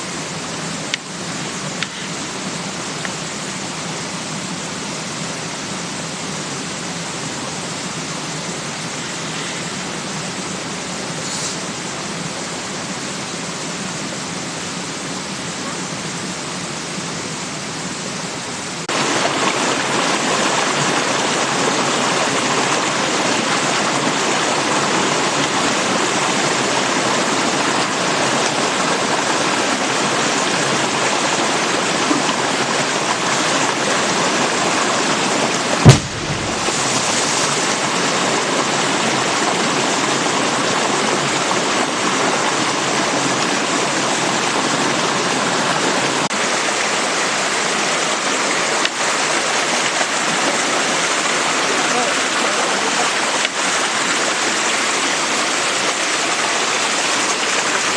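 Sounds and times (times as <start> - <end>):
stream rushing: 0.0 - 57.9
loud sharp bang: 35.8 - 37.4.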